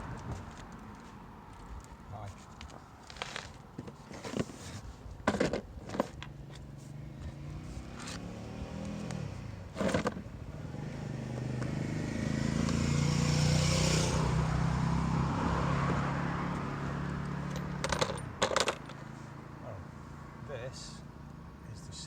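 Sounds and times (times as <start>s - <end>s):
vehicle engine passing: 6.5s - 22.0s.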